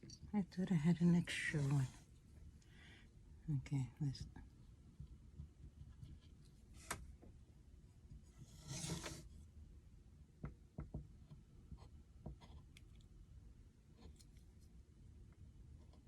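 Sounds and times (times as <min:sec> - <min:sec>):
wood scraping: 0:08.4 - 0:09.3
light wooden taps and knocks: 0:10.4 - 0:12.5.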